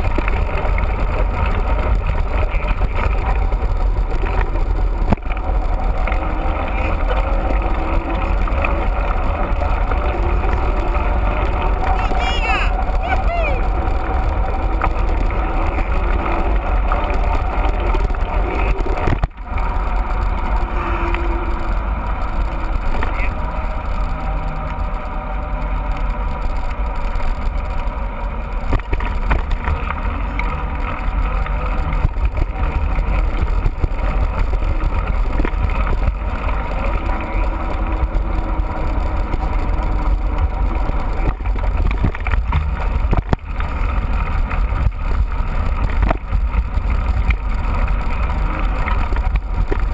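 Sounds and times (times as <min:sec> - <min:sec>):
bike tyre and trail noise: 0:00.0 - 0:49.9
wind buffeting microphone: 0:26.2 - 0:49.9.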